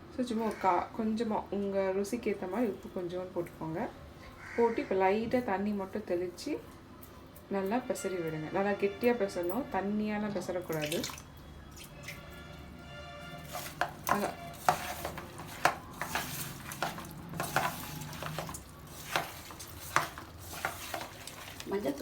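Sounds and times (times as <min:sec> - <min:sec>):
wet squelches of kneading meat: 0:10.7 - 0:12.6, 0:13.2 - 0:22.0.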